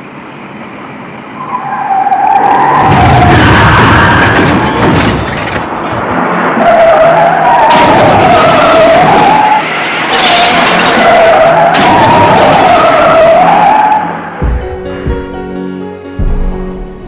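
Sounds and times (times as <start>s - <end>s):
car engine: 0.0s - 17.0s
car tyres squealing: 1.3s - 15.0s.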